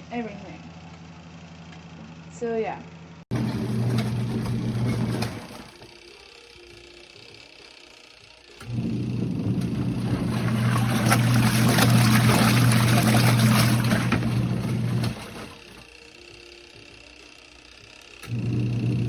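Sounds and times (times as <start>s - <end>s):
water churning in tub: 3.3s - 5.7s, 8.6s - 15.8s
washing machine motor humming: 3.3s - 19.0s.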